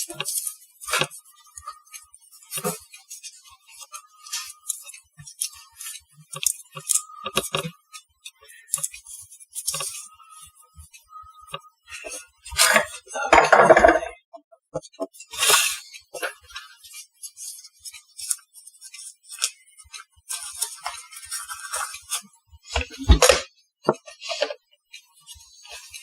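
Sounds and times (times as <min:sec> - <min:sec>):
kitchen items clicking and knocking: 0:13.3 - 0:14.2.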